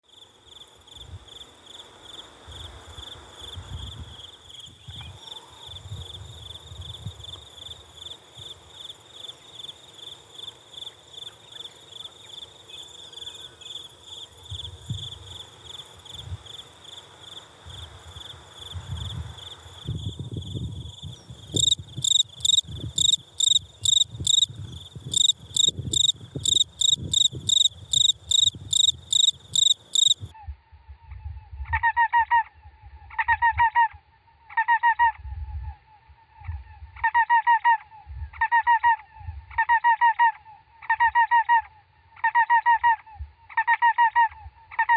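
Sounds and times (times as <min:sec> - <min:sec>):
cricket chirping: 0:00.1 - 0:30.3.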